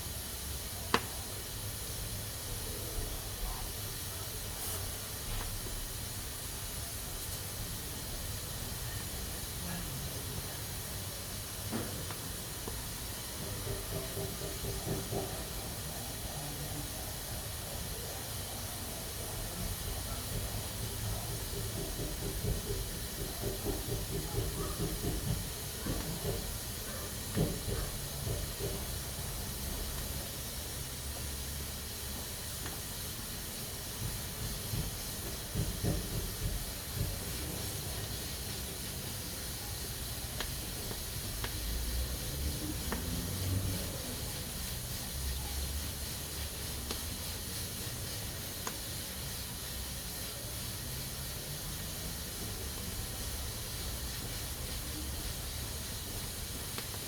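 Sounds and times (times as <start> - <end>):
pressure cooker hissing: 0.0 - 57.0.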